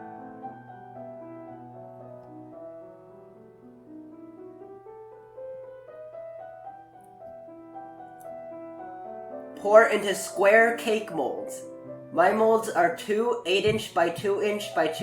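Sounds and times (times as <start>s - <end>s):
soft solo piano music: 0.0s - 15.0s.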